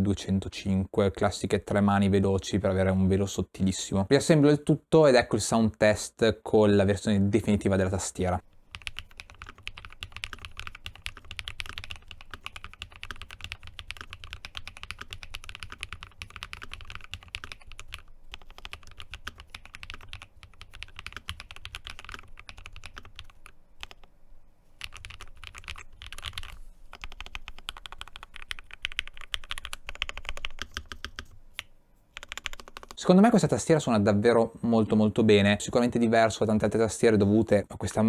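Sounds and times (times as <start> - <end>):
mechanical keyboard typing: 8.7 - 24.1, 24.8 - 33.0.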